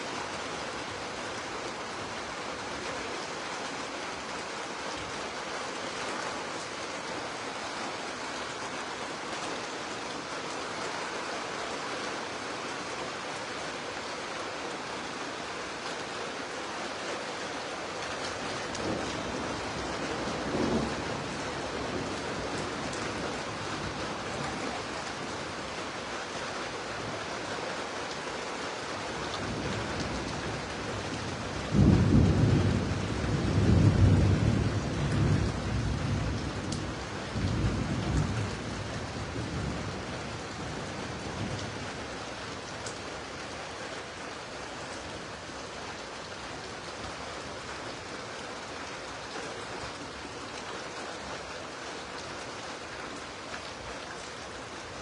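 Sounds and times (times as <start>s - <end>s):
heavy rain: 0.0s - 55.0s
low thunder rumble: 29.7s - 41.9s.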